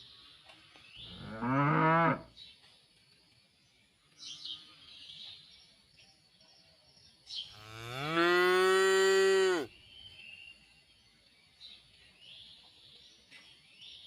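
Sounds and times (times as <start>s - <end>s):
cow mooing: 7.6s - 9.7s.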